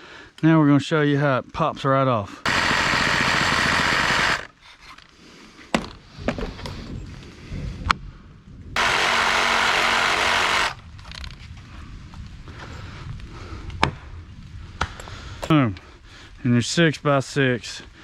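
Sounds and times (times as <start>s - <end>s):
power saw cutting wood: 2.4s - 4.6s, 8.8s - 10.8s.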